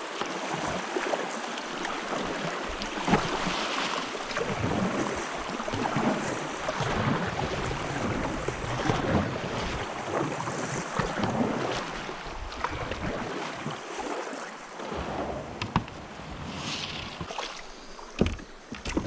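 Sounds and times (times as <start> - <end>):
river water rushing and splashing: 0.0 - 19.0.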